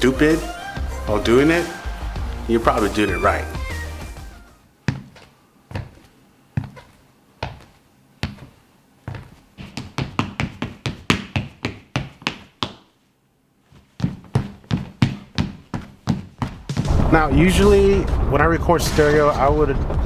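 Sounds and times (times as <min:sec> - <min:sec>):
footsteps on hardwood floor: 0:02.0 - 0:12.8, 0:13.7 - 0:16.9.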